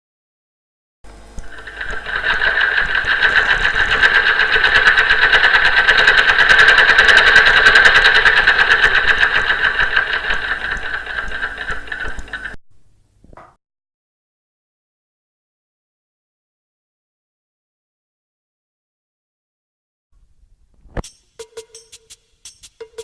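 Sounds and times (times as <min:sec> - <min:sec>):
sewing machine clattering: 0:01.4 - 0:12.6.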